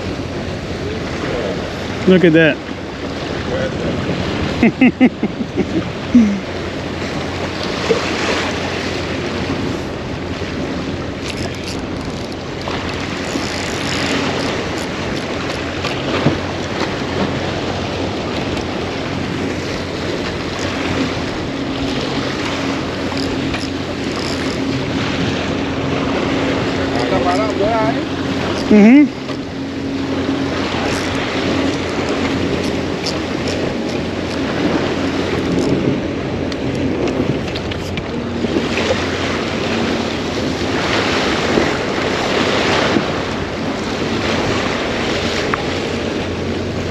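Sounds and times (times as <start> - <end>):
surf washing: 0.0 - 46.9
wind buffeting microphone: 0.0 - 46.9
small clicks: 11.2 - 16.0.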